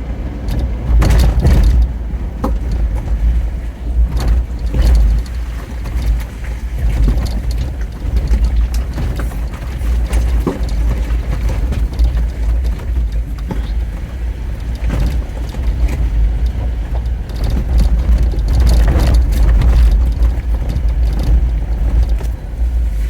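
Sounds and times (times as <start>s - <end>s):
knocks and rattles: 0.0s - 22.8s
car engine and road rumble: 0.0s - 23.0s.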